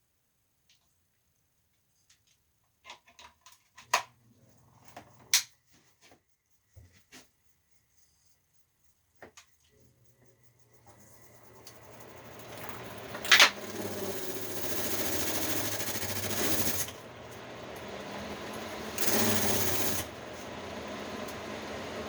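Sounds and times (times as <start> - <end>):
air conditioner buzzing hum: 9.9 - 22.0.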